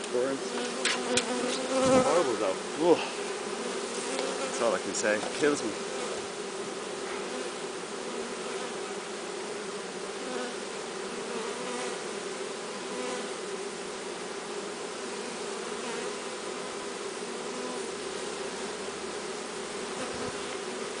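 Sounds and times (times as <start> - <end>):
honeybees buzzing: 0.0 - 21.0.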